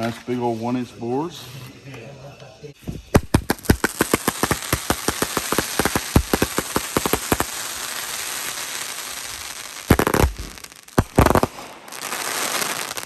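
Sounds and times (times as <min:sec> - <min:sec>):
firework crackling hiss: 0:02.8 - 0:13.0
firework cracks and pops: 0:02.8 - 0:13.0.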